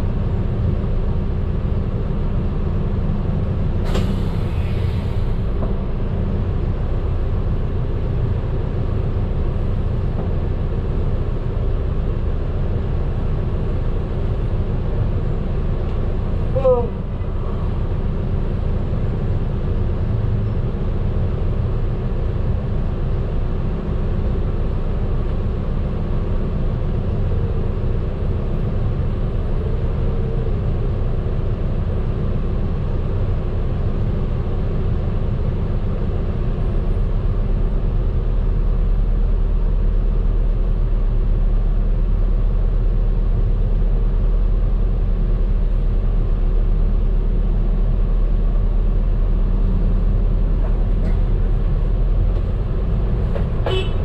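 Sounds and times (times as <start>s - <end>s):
bus engine and road rumble: 0.0s - 54.0s.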